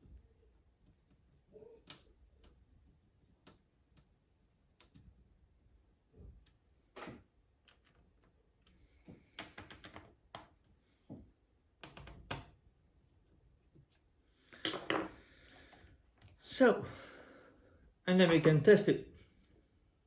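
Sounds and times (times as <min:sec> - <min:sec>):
clicks and taps on laptop plastic: 0:09.4 - 0:11.2.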